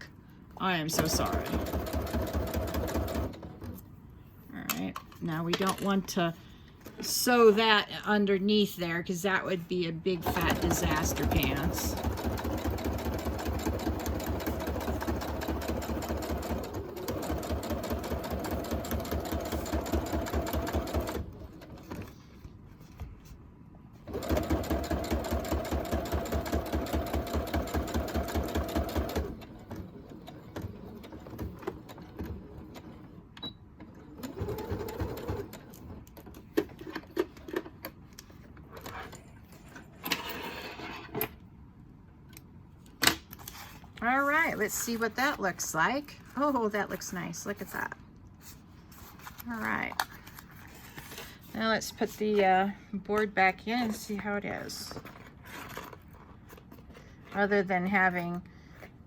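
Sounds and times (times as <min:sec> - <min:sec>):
sewing machine stitching: 0:01.0 - 0:03.8, 0:10.2 - 0:21.8, 0:24.1 - 0:33.1, 0:33.9 - 0:36.0.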